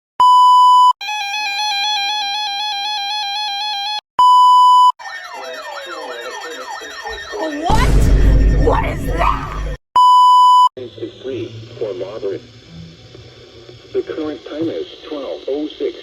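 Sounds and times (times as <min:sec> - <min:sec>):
electronic beep: 0:04.2 - 0:10.7
pulsing buzzing alarm tone: 0:04.5 - 0:09.8
sirens wailing: 0:05.0 - 0:09.8.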